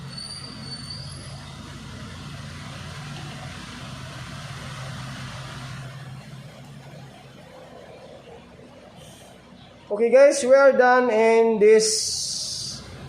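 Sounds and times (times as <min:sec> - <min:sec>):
motor vehicle passing: 0:00.0 - 0:09.6.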